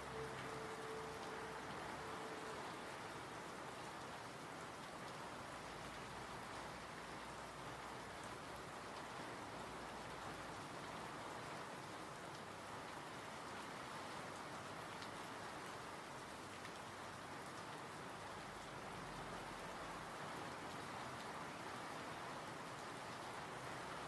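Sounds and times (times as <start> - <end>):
steady rain hiss: 0.0 - 24.0.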